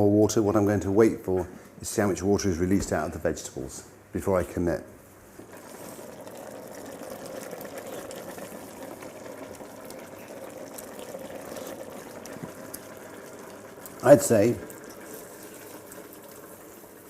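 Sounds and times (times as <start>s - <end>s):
soup simmering and bubbling: 5.4s - 17.0s.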